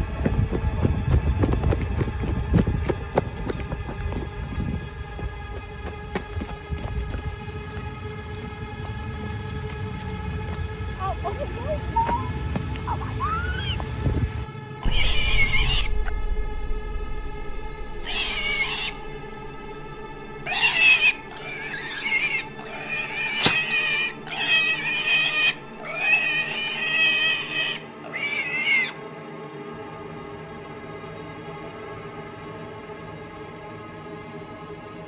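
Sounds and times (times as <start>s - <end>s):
sustained music drone: 0.0s - 35.0s
shrill wavering cries: 11.0s - 14.0s, 14.8s - 16.1s, 18.0s - 19.1s, 20.4s - 29.0s.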